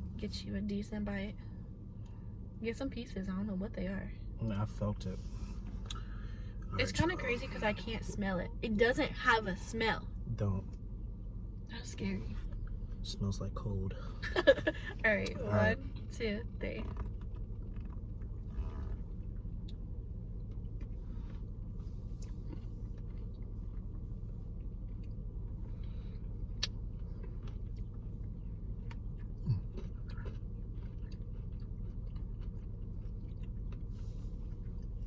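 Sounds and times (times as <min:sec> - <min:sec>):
low rumble: 0:00.0 - 0:35.0
faint chewing: 0:16.8 - 0:35.0.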